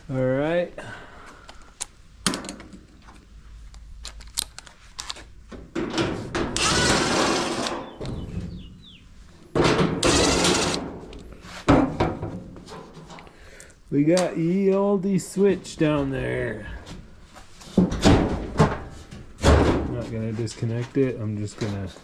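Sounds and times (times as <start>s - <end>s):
metal scraping: 9.6s - 11.7s
dryer metal cabinet clicks and knocks: 17.8s - 19.9s.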